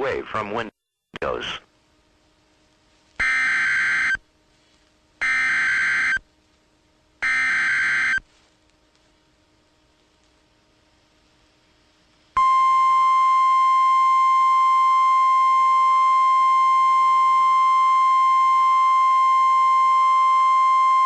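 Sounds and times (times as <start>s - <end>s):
high steady alert tone: 7.2s - 8.2s.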